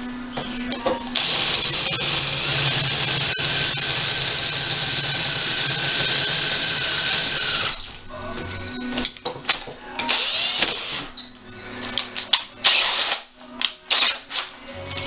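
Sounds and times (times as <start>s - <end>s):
electric drill bit squealing: 1.0s - 8.0s, 10.1s - 12.0s, 12.6s - 13.2s, 13.9s - 14.5s.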